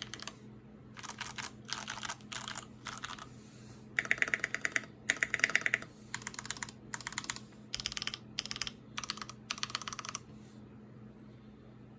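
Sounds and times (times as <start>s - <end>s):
mechanical keyboard typing: 0.0s - 0.4s, 1.0s - 3.3s, 4.0s - 10.3s.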